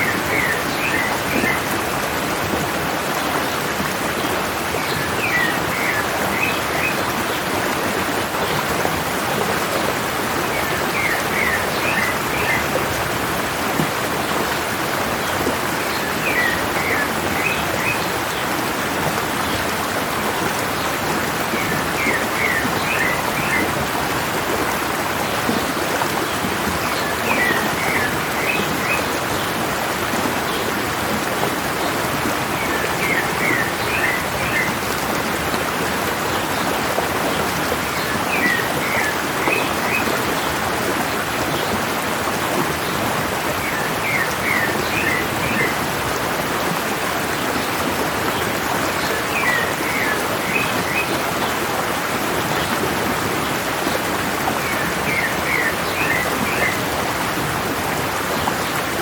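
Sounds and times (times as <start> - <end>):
stream water rushing: 0.0 - 59.0.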